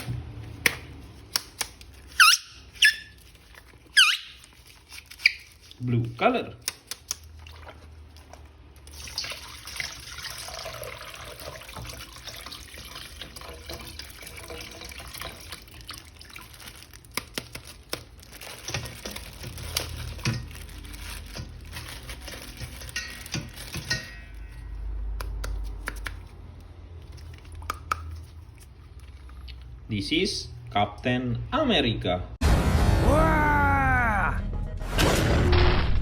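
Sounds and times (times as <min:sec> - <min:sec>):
tap water running and splashing: 0:07.1 - 0:23.9
low rumble: 0:32.4 - 0:36.0.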